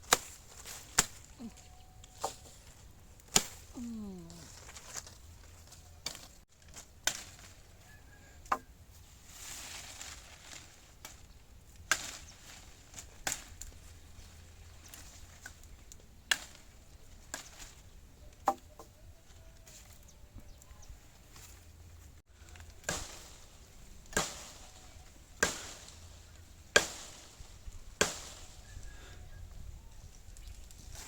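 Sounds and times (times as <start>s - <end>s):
sharp chopping strikes: 3.3s - 3.6s, 26.7s - 27.3s.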